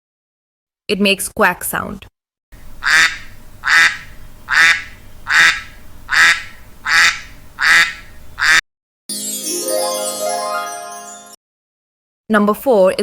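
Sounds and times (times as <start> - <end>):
duck quacking: 2.8 - 8.6.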